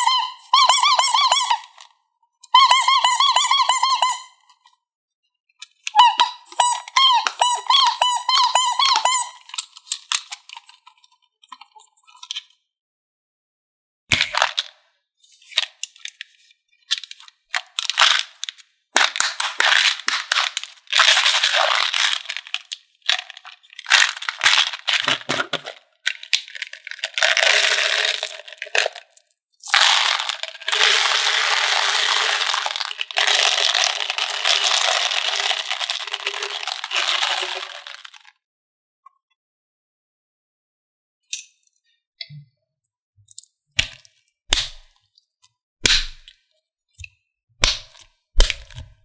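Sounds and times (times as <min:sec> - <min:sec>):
candy crunching and crackling: 0:17.0 - 0:38.3, 0:43.8 - 0:44.9, 0:45.8 - 0:46.3, 0:47.6 - 0:49.0.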